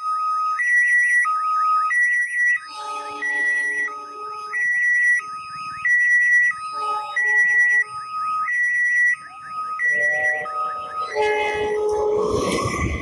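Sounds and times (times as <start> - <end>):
level-crossing warning alarm: 0.0 - 13.0
train horn chord: 11.2 - 12.4.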